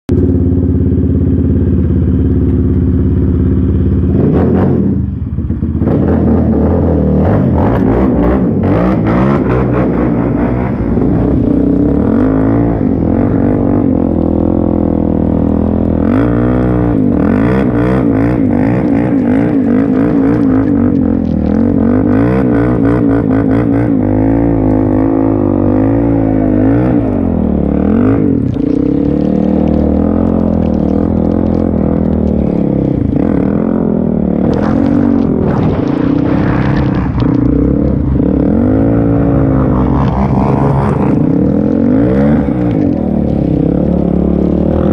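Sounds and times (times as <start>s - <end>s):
quad engine revving: 4.0s - 44.9s.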